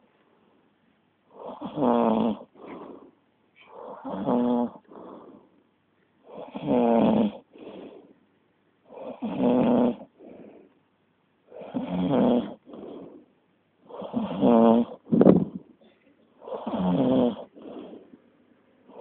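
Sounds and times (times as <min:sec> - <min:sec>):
loud snoring: 0:01.3 - 0:05.4, 0:06.3 - 0:08.0, 0:08.9 - 0:10.6, 0:11.5 - 0:13.3, 0:13.9 - 0:15.6, 0:16.4 - 0:18.2.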